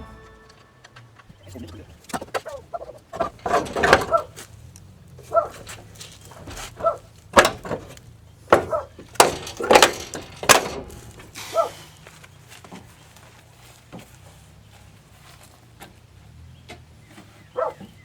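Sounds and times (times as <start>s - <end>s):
sharp knocks and clacks: 5.4s - 11.7s.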